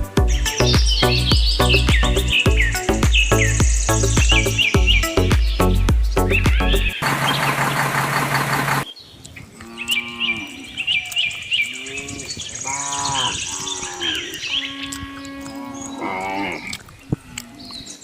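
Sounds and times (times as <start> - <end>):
birds chirping: 0.0 - 18.0
cattle mooing: 9.6 - 10.8, 11.7 - 17.7.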